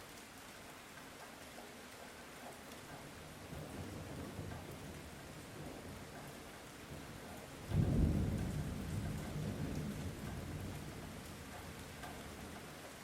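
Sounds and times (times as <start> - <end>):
light steady rain: 0.0 - 13.0
thunder rumbling: 7.7 - 11.2.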